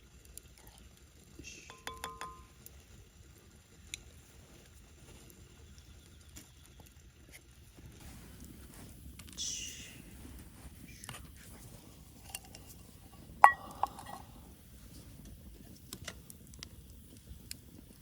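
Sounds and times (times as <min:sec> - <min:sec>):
metal cup clinking on cookware: 0:01.7 - 0:02.5, 0:13.4 - 0:14.3.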